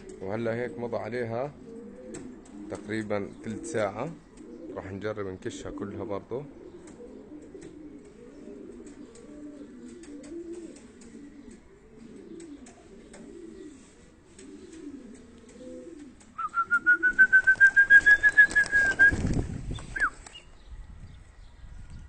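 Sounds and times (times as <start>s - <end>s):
pigeons cooing: 0.0s - 20.4s
fast-pulsing whistle: 16.4s - 19.3s.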